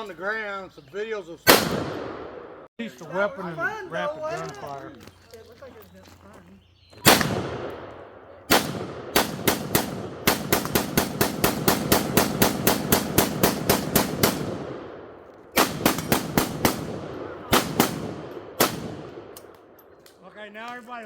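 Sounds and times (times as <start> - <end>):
rapid gunfire with echo: 7.1 - 19.4.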